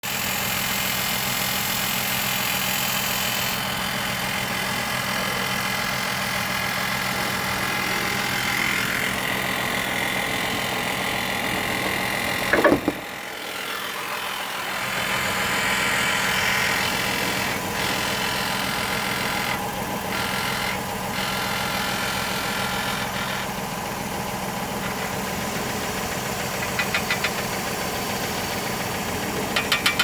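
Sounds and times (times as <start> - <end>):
engine rattle: 0.0 - 30.0
car engine running: 0.1 - 30.0
loud clatter: 8.6 - 13.8, 29.0 - 30.0.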